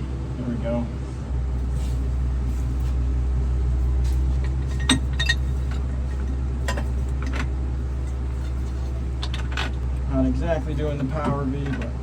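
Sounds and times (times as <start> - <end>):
engine running drone: 0.0 - 12.0.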